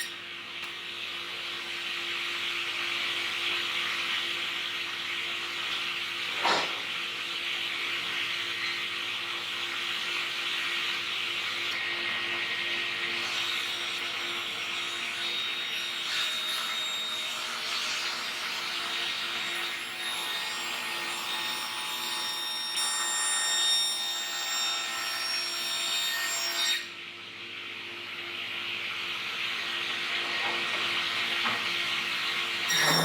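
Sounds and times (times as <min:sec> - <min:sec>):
woodworking power tool cutting timber: 0:11.7 - 0:26.8, 0:32.7 - 0:33.0.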